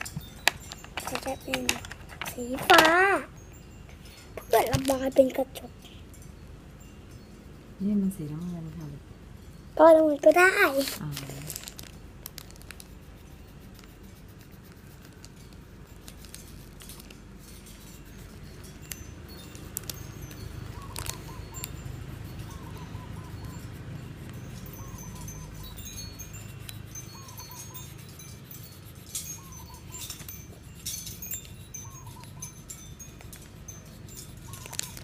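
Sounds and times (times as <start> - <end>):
birds calling and chirping: 0.0 - 35.0
steady low hum: 0.0 - 35.0
pencil colouring on paper: 0.8 - 3.3, 9.8 - 11.4, 12.3 - 18.7, 19.5 - 35.0.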